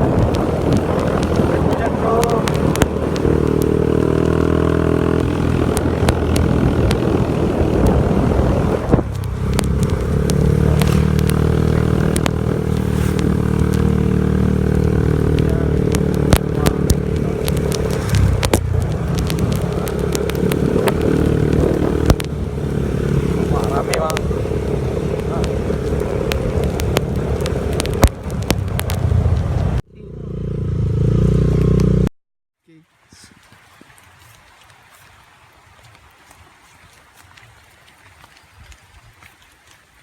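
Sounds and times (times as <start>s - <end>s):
motorcycle engine running: 0.0s - 32.1s
short clicks and crackles: 9.1s - 22.4s, 23.5s - 24.3s, 25.1s - 29.8s.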